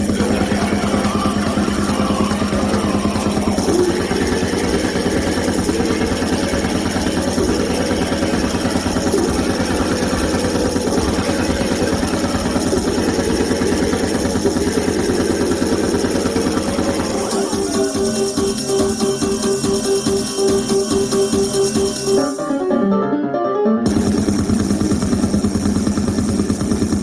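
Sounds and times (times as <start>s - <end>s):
fast low throb: 0.0s - 22.3s, 23.9s - 27.0s
harsh distorted static noise music: 0.0s - 22.6s, 23.8s - 27.0s.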